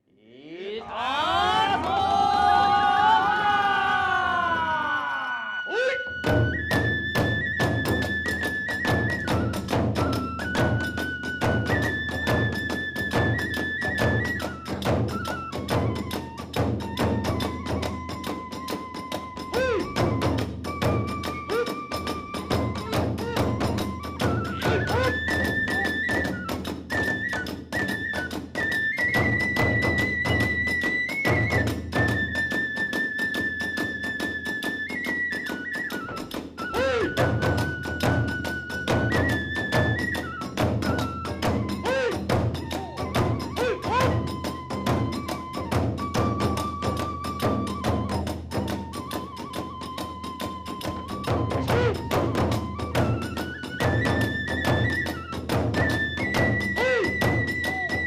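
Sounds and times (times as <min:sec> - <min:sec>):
bamboo flute: 0:00.4 - 0:58.0
drums beating rapidly: 0:06.2 - 0:32.4, 0:35.6 - 0:58.0
fast drum beats: 0:35.6 - 0:48.9.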